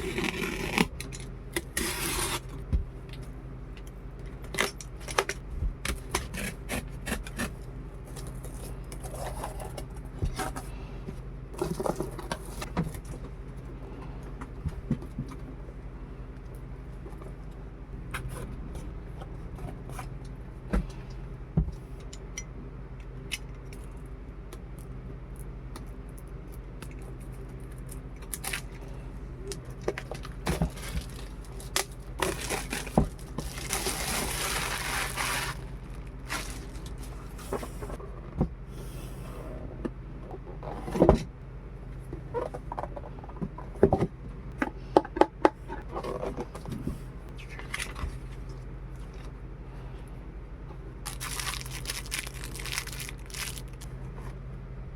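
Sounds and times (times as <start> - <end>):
low steady hum: 0.0 - 54.9
packaging rustle: 29.8 - 37.4, 51.1 - 53.9.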